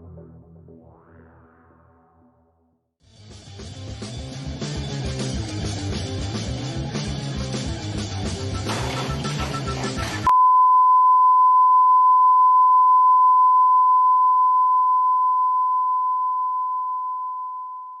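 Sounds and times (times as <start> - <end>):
steady electronic beep tone: 10.3 - 18.0.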